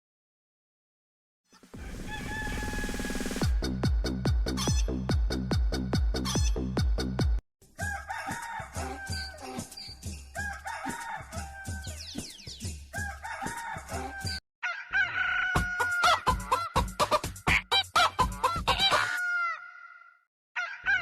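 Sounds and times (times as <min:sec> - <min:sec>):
rooster crowing: 0:01.7 - 0:03.3, 0:07.8 - 0:09.6, 0:10.4 - 0:12.1, 0:12.9 - 0:16.3, 0:18.9 - 0:21.0
steady beat: 0:02.8 - 0:07.4
chicken clucking ringtone: 0:13.0 - 0:19.9.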